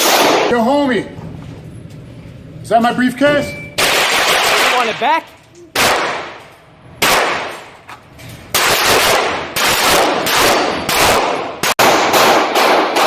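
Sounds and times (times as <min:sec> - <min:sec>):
pistol shots ringing: 0:00.0 - 0:00.7, 0:03.5 - 0:07.8, 0:08.5 - 0:13.0.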